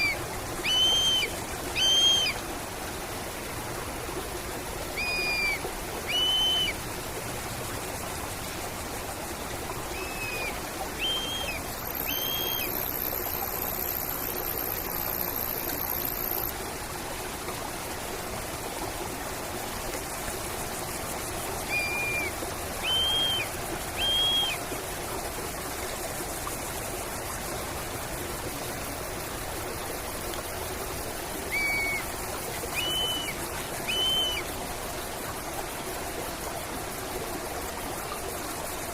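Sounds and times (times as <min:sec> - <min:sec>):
stream running: 0:00.0 - 0:38.9
thin high steady tone: 0:09.8 - 0:16.5
bird calling in clear notes: 0:10.0 - 0:13.1, 0:32.8 - 0:34.4.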